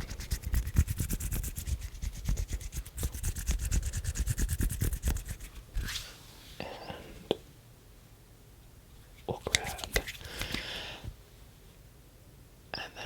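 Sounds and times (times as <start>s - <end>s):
hands rubbing quickly: 0.0s - 6.2s, 9.4s - 10.8s.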